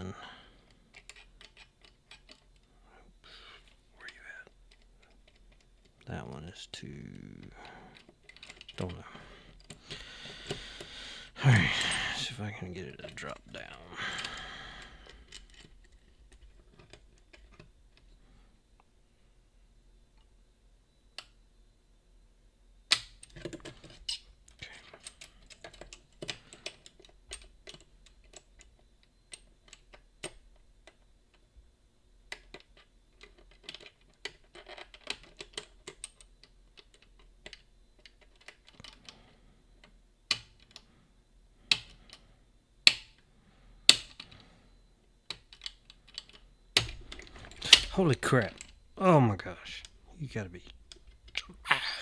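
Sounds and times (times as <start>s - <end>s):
lock-picking tools clicking and scraping: 0.0s - 6.1s, 6.9s - 18.2s, 22.9s - 31.4s, 32.3s - 40.9s, 41.7s - 42.2s, 43.8s - 44.5s, 45.3s - 52.0s
lock opening clicks: 45.3s - 49.0s.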